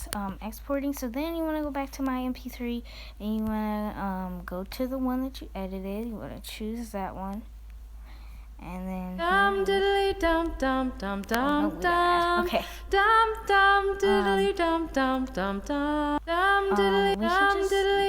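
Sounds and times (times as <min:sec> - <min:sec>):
high voice singing: 0:09.2 - 0:18.0.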